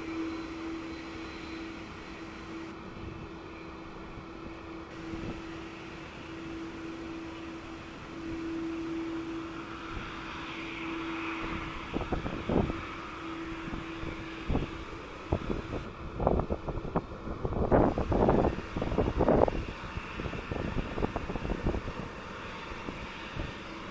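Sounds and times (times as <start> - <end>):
distant jet engines droning: 0.0 - 23.9
wind buffeting microphone: 4.9 - 23.9.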